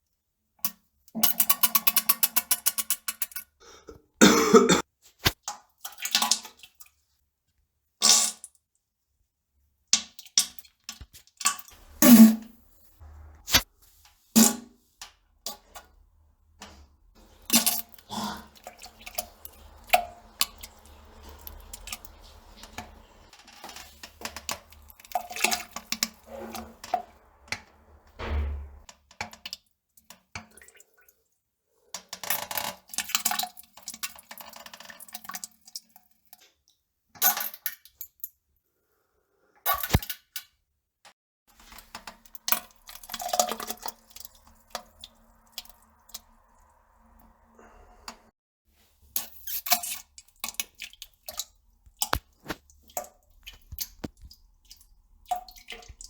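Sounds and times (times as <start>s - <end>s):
plops and splashes in toilet water: 4.3s - 7.0s, 14.4s - 31.2s, 32.0s - 38.0s, 39.7s - 40.4s, 41.6s - 47.4s, 49.1s - 56.0s
passing gas: 11.8s - 12.6s.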